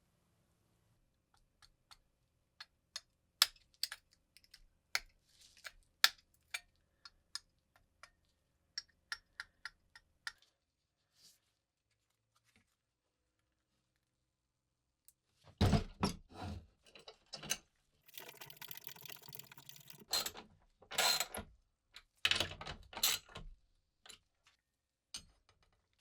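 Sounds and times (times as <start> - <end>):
small hard objects clicking: 2.6 - 8.2, 18.1 - 20.2.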